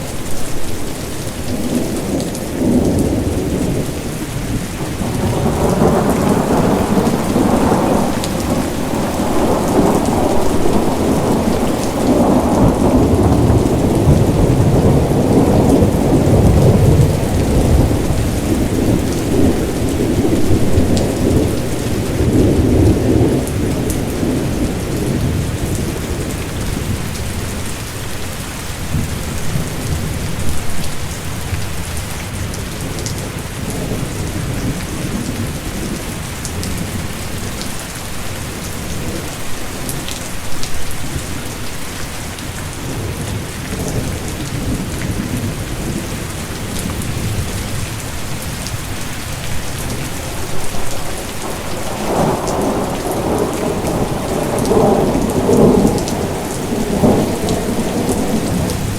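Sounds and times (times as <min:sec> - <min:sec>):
low rolling thunder: 0:00.0 - 0:27.7, 0:42.7 - 0:58.9
heavy rain: 0:00.0 - 0:58.9.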